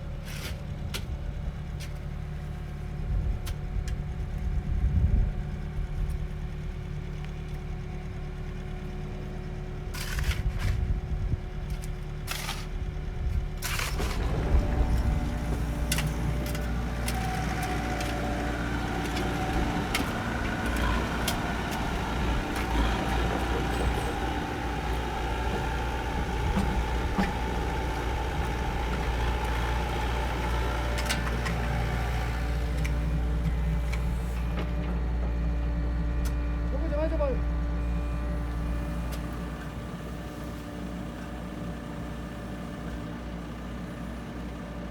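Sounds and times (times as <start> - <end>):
diesel engine running: 0.0 - 44.9.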